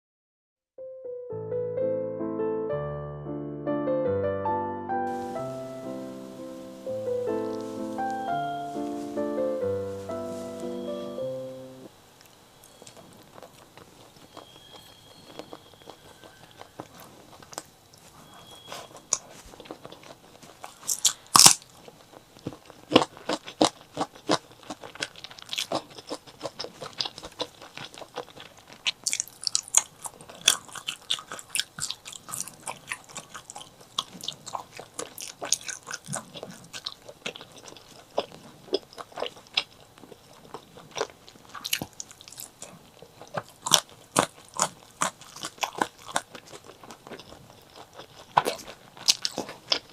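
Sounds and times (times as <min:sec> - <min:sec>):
crunchy chewing: 0:12.2 - 0:49.9.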